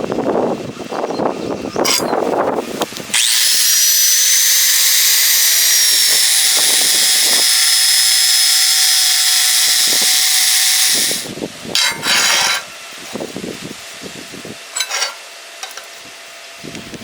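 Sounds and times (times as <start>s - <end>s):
power tool motor whine: 1.9s - 13.3s.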